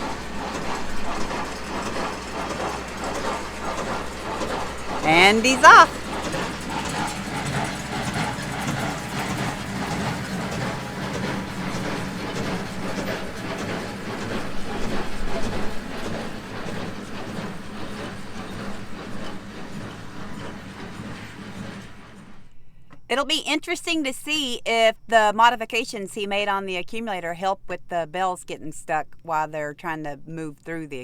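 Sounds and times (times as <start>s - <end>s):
baler mechanical clatter: 0.0s - 23.0s
tractor engine drone: 0.0s - 23.3s.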